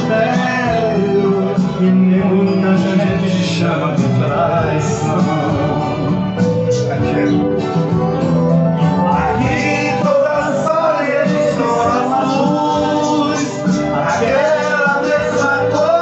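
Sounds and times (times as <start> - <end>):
man singing country music: 0.0 - 16.0.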